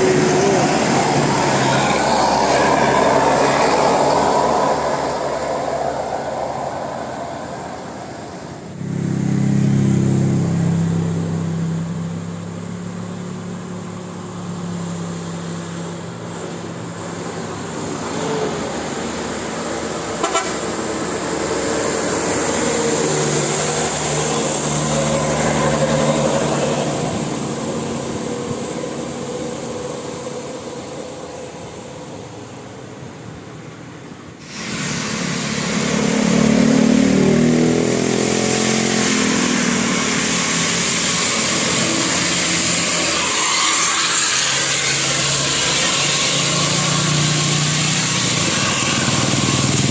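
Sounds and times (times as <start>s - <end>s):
vehicle noise: 0.0s - 49.9s
musical air horn melody: 20.2s - 20.8s.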